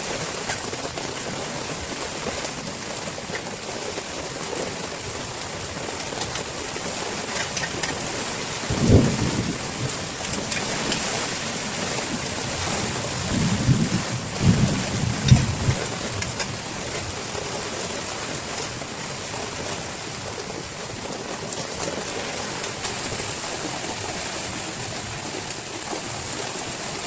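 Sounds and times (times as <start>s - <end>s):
heavy rain: 0.0s - 27.0s
thunder rumbling: 8.6s - 17.2s.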